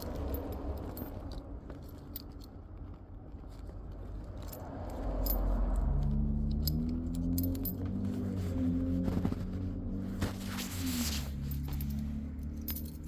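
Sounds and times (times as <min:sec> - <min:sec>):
keys jangling and clicking: 0:00.0 - 0:08.3, 0:11.0 - 0:13.0.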